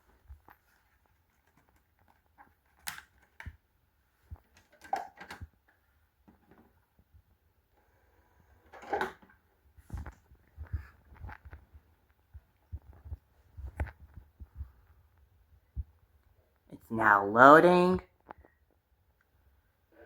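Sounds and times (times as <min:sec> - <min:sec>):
plastic disc case clicks and knocks: 0:04.4 - 0:05.5.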